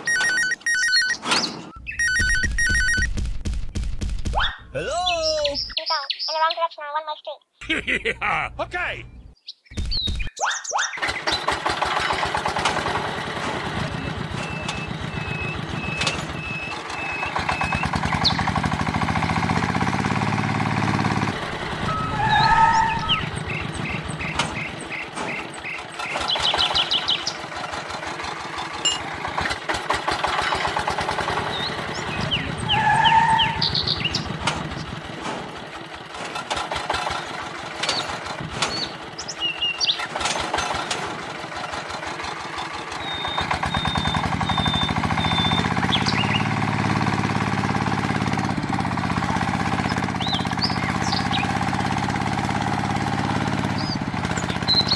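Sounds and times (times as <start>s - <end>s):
small motor clattering: 11.0s - 32.8s, 33.4s - 54.9s
short high beeps: 21.8s - 23.2s.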